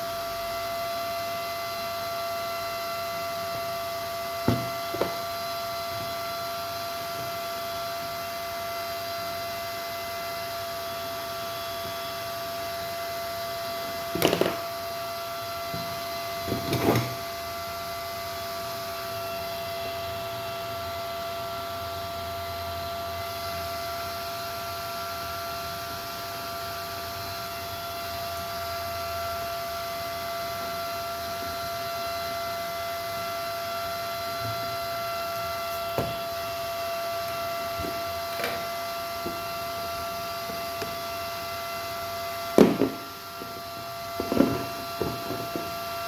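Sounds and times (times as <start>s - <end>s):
electrical hum: 34.1s - 46.0s.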